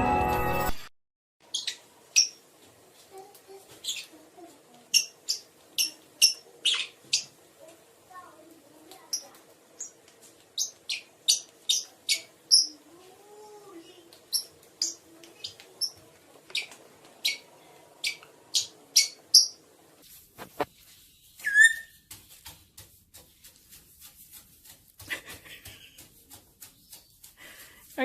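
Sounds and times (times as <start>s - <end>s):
small bird chirping: 1.4s - 2.4s, 3.8s - 4.2s, 4.8s - 7.4s, 9.1s - 10.0s, 10.6s - 12.8s, 13.8s - 19.6s, 21.4s - 22.0s
faint clicks and taps: 8.5s - 12.0s, 14.0s - 17.2s.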